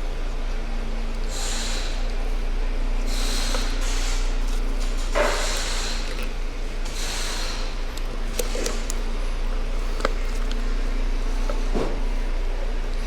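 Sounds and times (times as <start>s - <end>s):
steady hum: 0.0s - 13.0s
short hisses: 1.3s - 2.1s, 3.1s - 4.4s, 5.2s - 6.1s, 7.0s - 7.8s
small metallic clicks: 7.0s - 9.2s.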